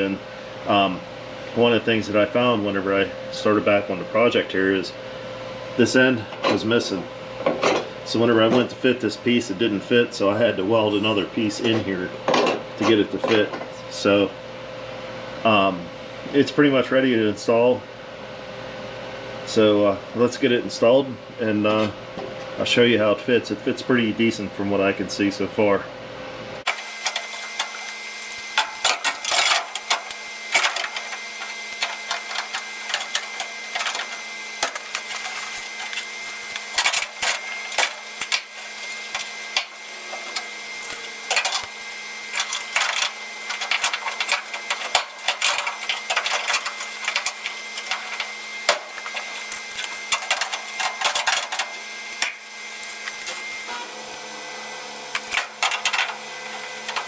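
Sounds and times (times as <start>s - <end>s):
metallic clanks and knocks: 26.7s - 41.7s, 42.3s - 54.2s, 55.1s - 57.0s
steady hum: 26.7s - 57.0s.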